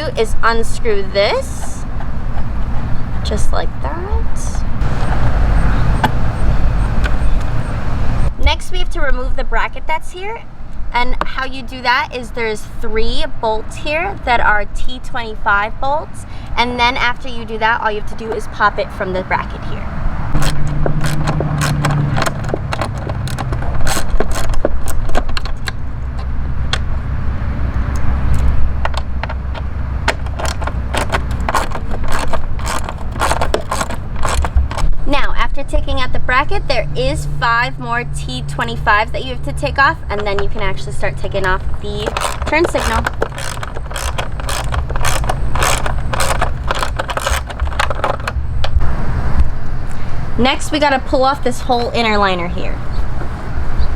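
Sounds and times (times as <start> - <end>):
steady low rumble: 0.0 - 8.6, 13.2 - 53.9
hand tools and bolts clicking: 20.4 - 26.9, 28.3 - 34.9, 41.2 - 48.8.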